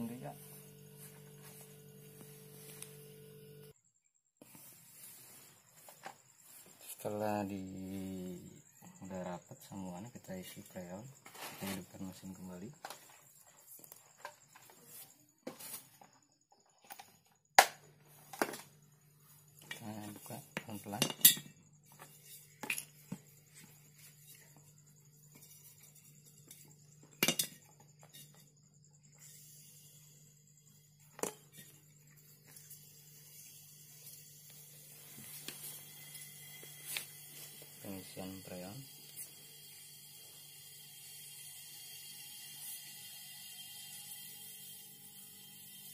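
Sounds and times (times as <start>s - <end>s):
compressor humming: 0.0s - 3.7s
tools tapping and clicking: 25.3s - 28.4s.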